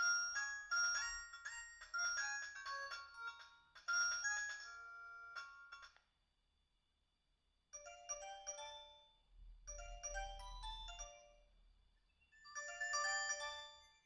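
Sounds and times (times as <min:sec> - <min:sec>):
mobile phone ringtone chiming: 0:00.0 - 0:05.9, 0:07.8 - 0:11.5, 0:12.4 - 0:14.0.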